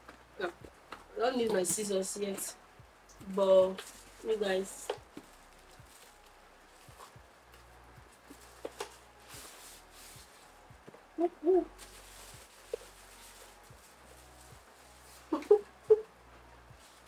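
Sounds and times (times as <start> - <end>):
hoot-like calls: 11.2 - 11.7.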